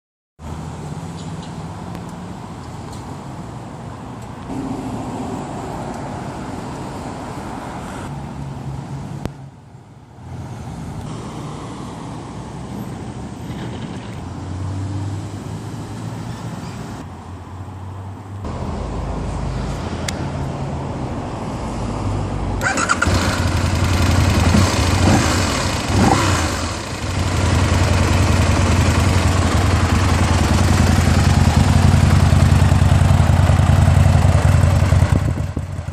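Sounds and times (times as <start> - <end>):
motorcycle engine idling: 22.6 - 35.9.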